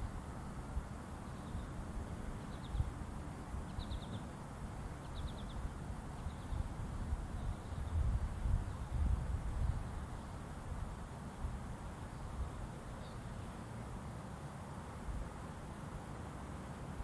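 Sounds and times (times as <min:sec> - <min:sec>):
small bird chirping: 0:01.2 - 0:01.8, 0:02.4 - 0:03.0, 0:03.6 - 0:04.4, 0:05.0 - 0:06.7, 0:07.3 - 0:09.0, 0:12.1 - 0:13.6.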